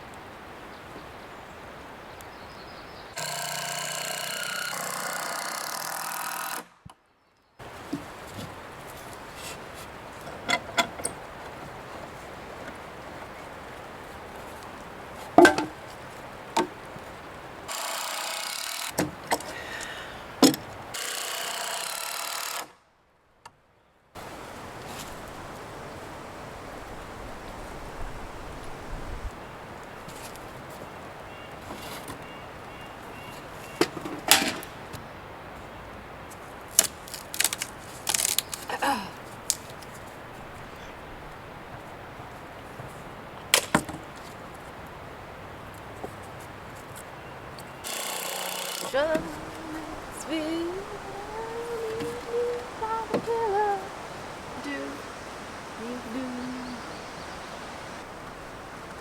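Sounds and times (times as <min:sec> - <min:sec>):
boards and tools knocking: 0:10.3 - 0:11.6, 0:15.4 - 0:15.8, 0:17.7 - 0:19.6, 0:33.8 - 0:34.7
wooden boards knocking: 0:15.4 - 0:15.8
steady hiss: 0:24.2 - 0:47.1, 0:47.8 - 0:59.0
scraping creak: 0:47.6 - 0:49.9.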